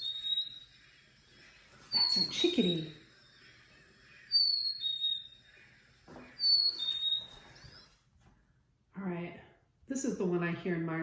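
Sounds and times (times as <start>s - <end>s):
chickadee whistled song: 0.0s - 1.2s, 1.9s - 8.0s.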